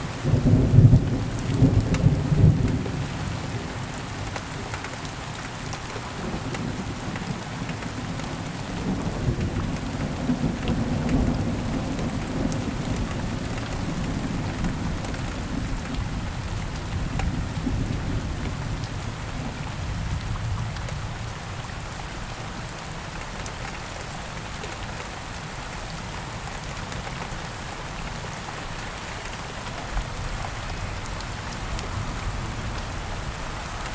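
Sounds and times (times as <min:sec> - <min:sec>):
steady rain: 0:00.0 - 0:33.9
low rolling thunder: 0:00.2 - 0:03.4, 0:08.7 - 0:21.9.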